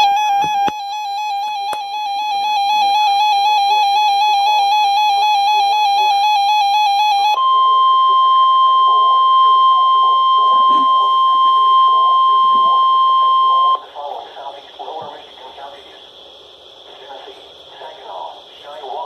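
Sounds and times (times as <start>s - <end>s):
steady high alarm tone: 0.0s - 13.8s
alarm warbling between two pitches: 7.4s - 13.8s.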